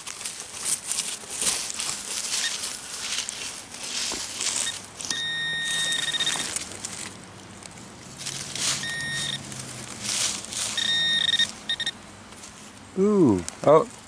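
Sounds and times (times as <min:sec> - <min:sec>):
metal detector high-pitched tone: 0:04.6 - 0:06.6, 0:08.8 - 0:09.4, 0:10.7 - 0:12.0.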